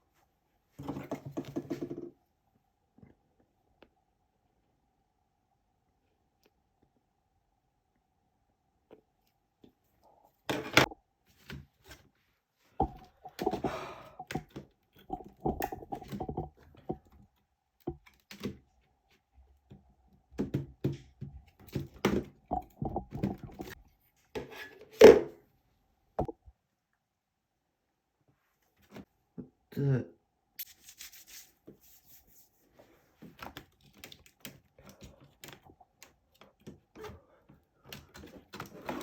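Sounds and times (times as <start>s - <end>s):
tools and parts knocking and rattling: 0.8s - 2.1s.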